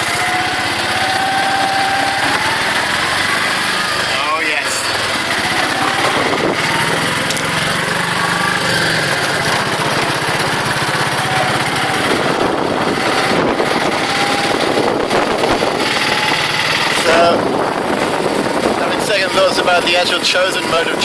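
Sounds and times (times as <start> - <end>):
small engine running: 0.0 - 21.0.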